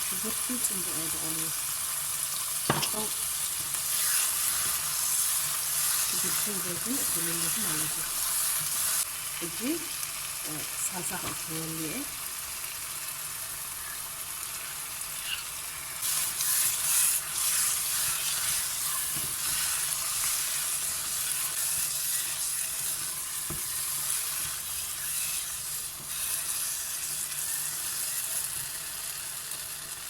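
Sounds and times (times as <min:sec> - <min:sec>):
food sizzling in oil: 0:00.0 - 0:30.0
stirring scraping: 0:16.0 - 0:27.8.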